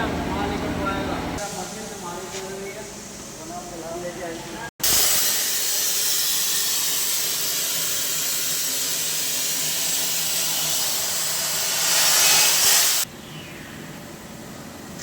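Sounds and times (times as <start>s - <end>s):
plasma cutter torch hissing: 4.8s - 13.1s.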